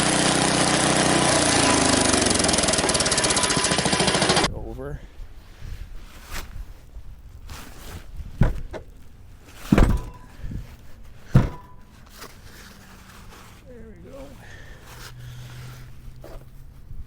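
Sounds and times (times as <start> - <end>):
heavy thunks: 8.3 - 8.9, 9.6 - 11.9.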